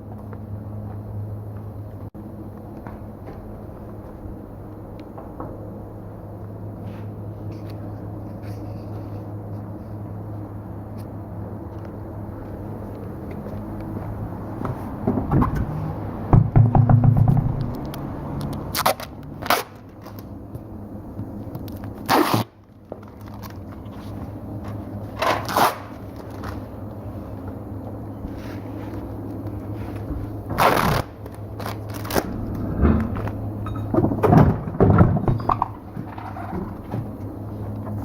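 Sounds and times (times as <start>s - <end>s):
low machine hum: 0.0s - 38.0s
metallic knocks and clanks: 16.3s - 18.0s, 32.2s - 37.1s.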